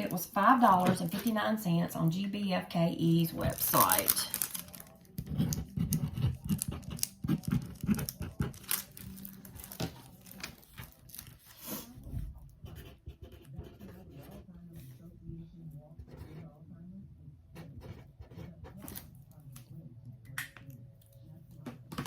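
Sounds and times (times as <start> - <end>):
plastic wrapping rustling and crinkling: 0.0 - 1.4, 3.4 - 5.8, 6.5 - 11.8.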